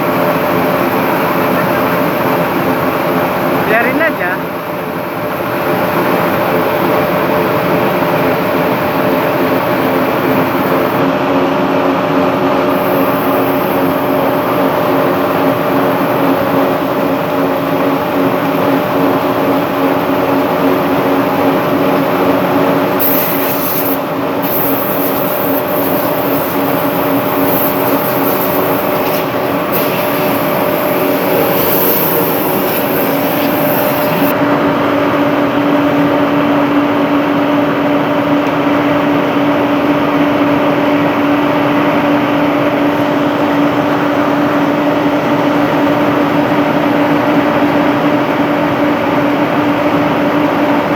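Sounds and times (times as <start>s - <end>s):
slitting machine running: 4.7s - 11.0s, 12.6s - 34.4s
high hiss: 8.6s - 11.0s, 12.7s - 14.7s, 23.0s - 34.3s.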